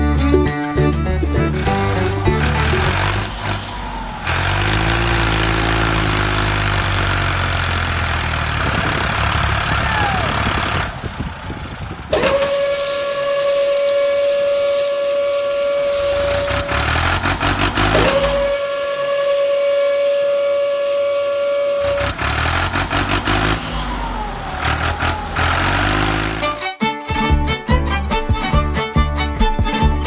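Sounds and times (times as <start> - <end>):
motor running: 1.4 - 18.8, 21.8 - 26.7
loud hiss: 12.3 - 20.4
steady high whistling tone: 12.6 - 22.0.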